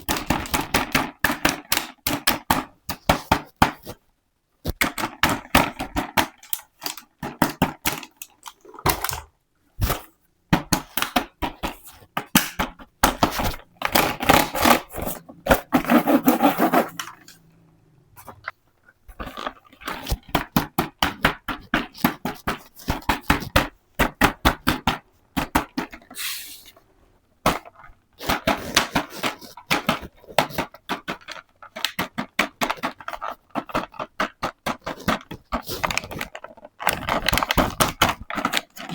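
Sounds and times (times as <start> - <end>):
plastic packaging crinkling: 34.8 - 38.9.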